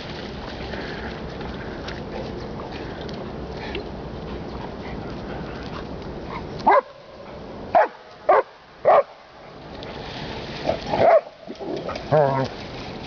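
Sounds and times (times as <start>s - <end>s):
dog barking: 6.7s - 6.9s, 7.8s - 9.1s, 11.0s - 11.3s.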